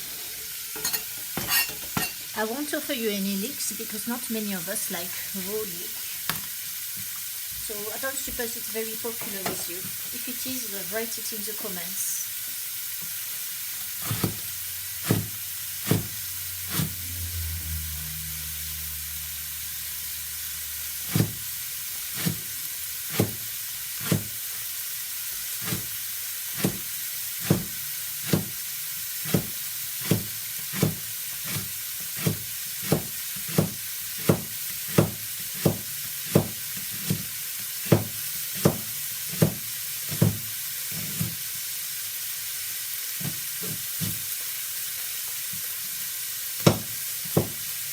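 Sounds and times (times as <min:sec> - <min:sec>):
steady hiss: 0:00.0 - 0:17.2, 0:35.6 - 0:47.9
knife chopping on board: 0:14.0 - 0:17.0, 0:21.0 - 0:21.4, 0:22.1 - 0:24.4, 0:25.6 - 0:28.6, 0:29.2 - 0:41.4, 0:46.6 - 0:47.7
low hum: 0:16.4 - 0:20.9.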